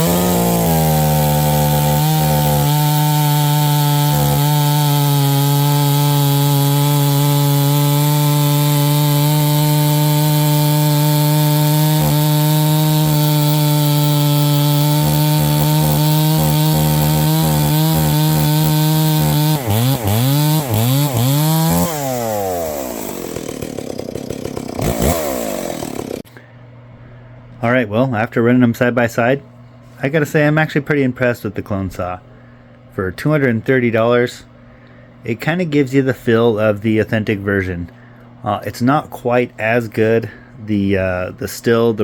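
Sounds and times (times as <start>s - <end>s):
chainsaw revving and idling: 0.0s - 26.3s
two-stroke chainsaw cutting wood: 0.0s - 26.3s.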